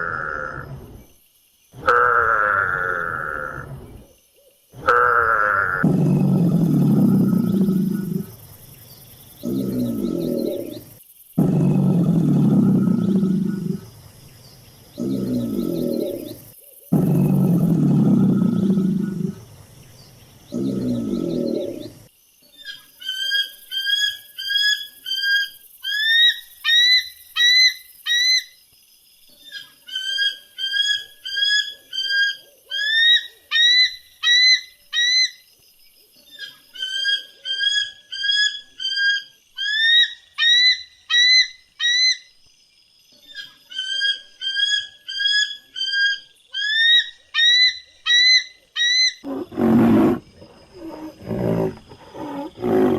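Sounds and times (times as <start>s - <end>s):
low animal roar: 0.0s - 1.0s, 1.8s - 4.0s, 4.8s - 8.5s, 9.4s - 14.0s, 15.0s - 19.6s, 20.5s - 22.1s, 49.2s - 52.9s.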